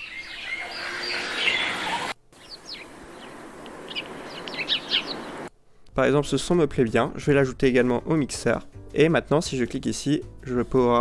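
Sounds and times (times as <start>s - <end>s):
bird calls: 0.0s - 5.5s
birds chirping short notes: 0.0s - 5.5s
outdoor background noise: 0.0s - 6.0s.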